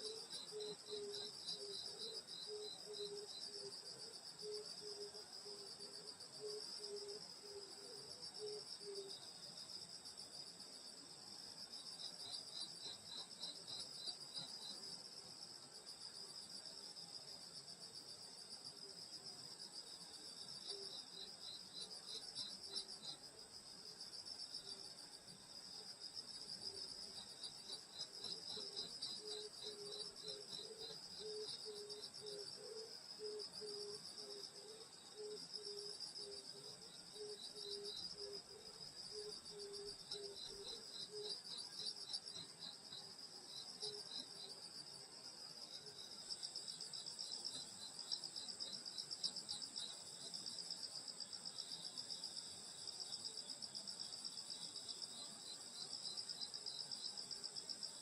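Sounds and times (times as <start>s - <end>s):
crickets trilling: 0.0s - 10.2s, 11.8s - 58.0s
low pulsed insect call: 0.0s - 58.0s.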